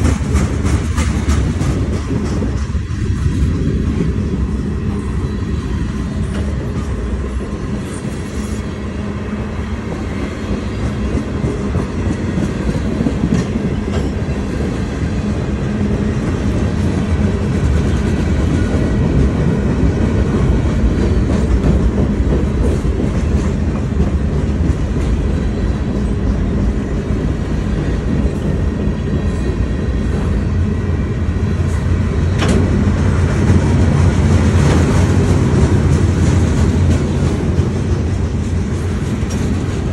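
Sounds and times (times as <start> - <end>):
wheels clicking over rail joints: 0.0 - 4.4, 31.6 - 39.9
freight train cars rumbling: 0.0 - 39.9.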